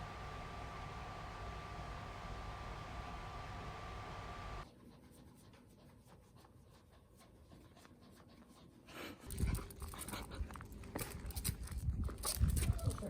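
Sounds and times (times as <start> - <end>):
dog panting: 4.7 - 11.6.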